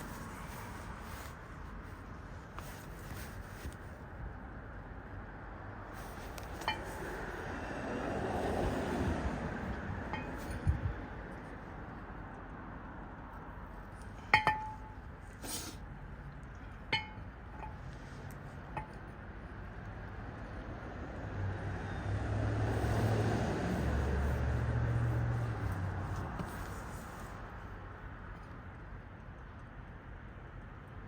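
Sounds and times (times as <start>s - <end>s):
metallic clinks of brake parts: 14.1s - 15.6s.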